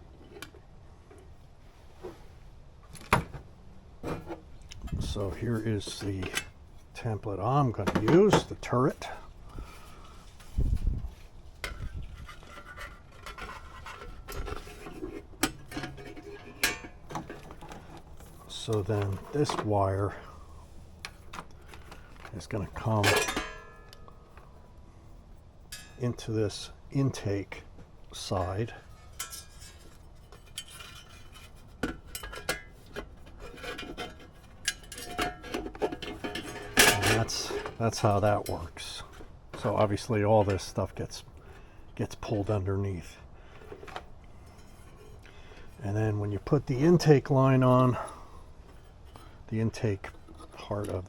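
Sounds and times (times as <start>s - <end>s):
parts rubbing and scraping: 4.0s - 51.0s.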